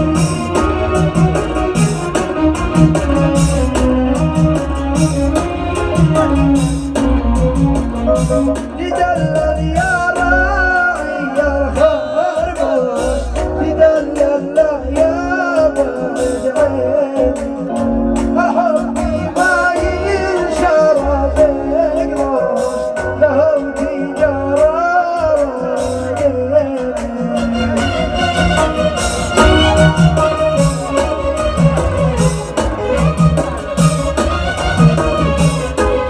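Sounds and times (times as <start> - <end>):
electronic keyboard melody: 0.0 - 36.0
heavy steady beat: 0.0 - 36.0.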